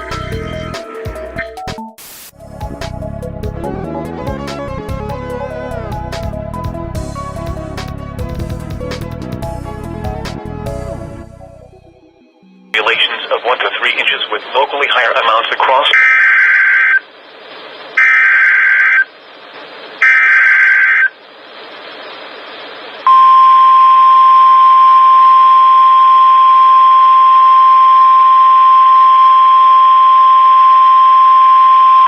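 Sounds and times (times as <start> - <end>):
radio hiss: 2.0 - 2.3, 12.8 - 23.1
steady warning alarm tone: 16.0 - 17.2, 18.0 - 19.2, 20.0 - 21.2, 21.8 - 32.0.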